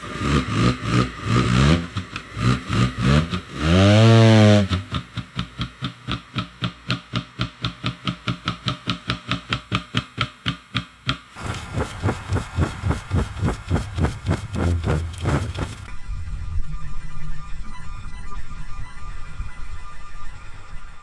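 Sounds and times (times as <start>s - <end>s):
hand truck rumbling: 11.4s - 15.9s.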